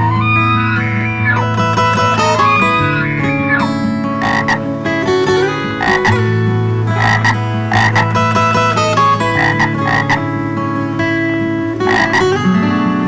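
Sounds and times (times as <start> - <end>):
background music with guitar: 0.0 - 13.0
short sharp animal calls: 9.2 - 10.2.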